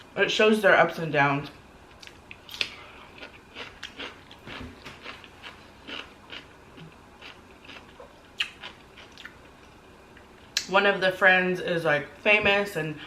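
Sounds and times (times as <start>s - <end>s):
person chewing and crunching: 2.0s - 10.3s
wet mouth clicks: 8.4s - 9.3s.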